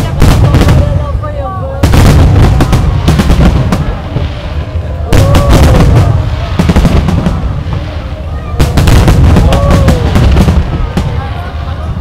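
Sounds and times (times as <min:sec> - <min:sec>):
fireworks bangs and crackles: 0:00.0 - 0:12.0
crowd calling out: 0:04.8 - 0:12.0.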